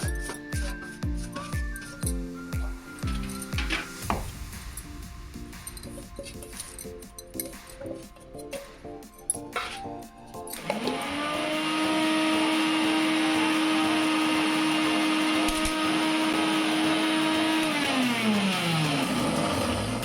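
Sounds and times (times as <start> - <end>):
kitchen blender motor whining: 10.6 - 20.0.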